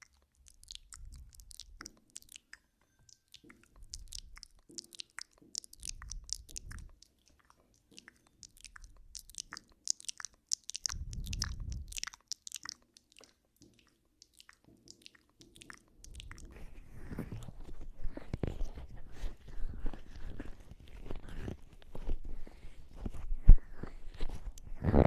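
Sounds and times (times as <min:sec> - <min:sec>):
wet mouth clicks and smacks: 0:00.0 - 0:22.6
low rumble: 0:10.9 - 0:12.0.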